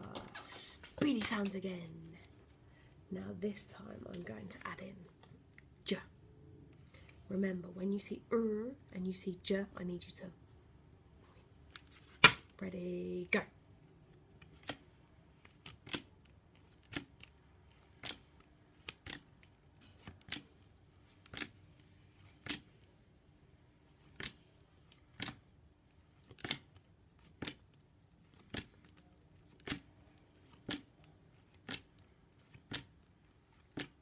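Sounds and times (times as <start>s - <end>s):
flashcards snapping: 14.4s - 22.9s, 24.0s - 25.4s, 26.2s - 34.0s.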